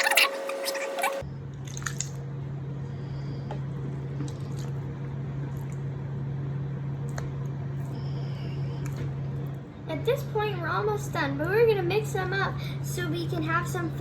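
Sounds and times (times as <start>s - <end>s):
low hum: 0.0s - 14.0s
slime squishing and dripping: 1.5s - 2.3s.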